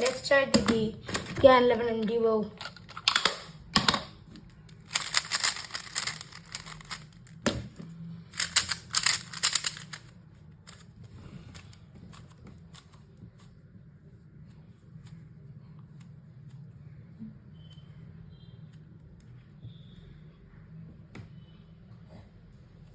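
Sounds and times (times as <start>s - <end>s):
puzzle cube clicking: 4.7s - 7.5s, 8.3s - 10.1s.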